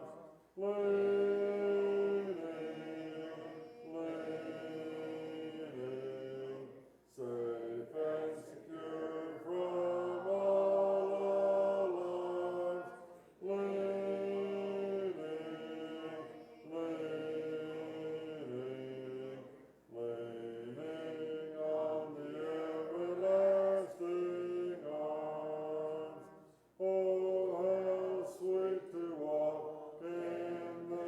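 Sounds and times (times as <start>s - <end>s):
congregation singing a hymn: 0.0s - 31.0s.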